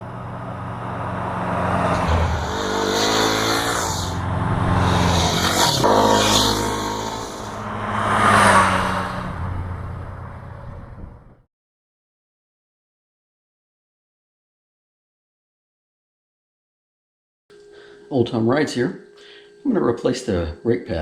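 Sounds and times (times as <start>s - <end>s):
engine revving: 0.0s - 11.4s.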